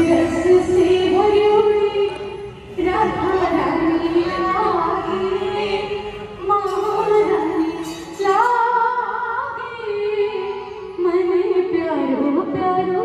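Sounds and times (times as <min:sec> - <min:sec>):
woman singing over music: 0:00.0 - 0:13.0.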